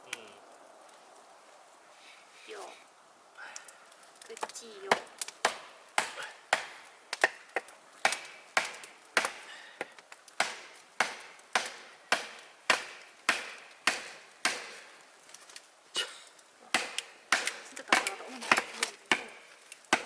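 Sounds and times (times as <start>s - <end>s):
axe chopping firewood: 4.4s - 15.4s, 16.0s - 20.0s.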